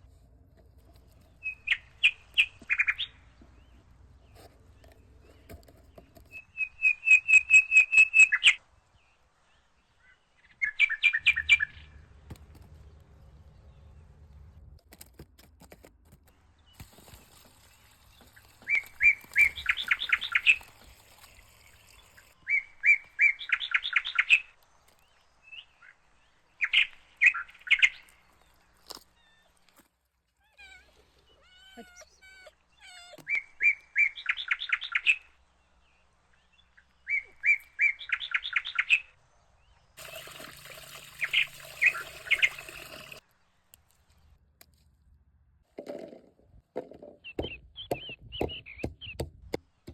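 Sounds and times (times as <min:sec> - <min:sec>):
bird singing a repeated phrase: 0:09.9 - 0:12.0, 0:36.2 - 0:39.8, 0:47.2 - 0:49.2.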